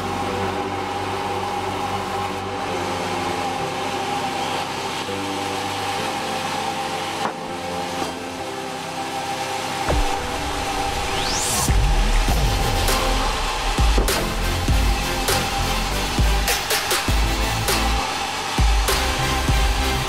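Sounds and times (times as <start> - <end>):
sawmill machinery hum and whine: 0.0 - 20.0.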